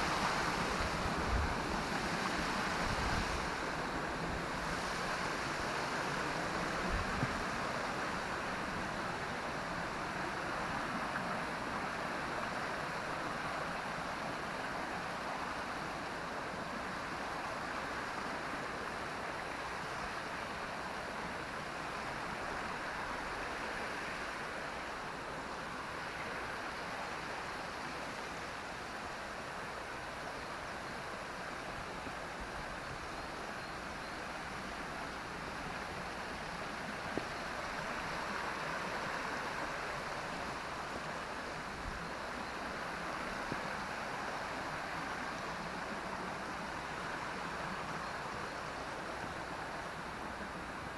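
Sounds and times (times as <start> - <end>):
water rushing: 0.0 - 50.9.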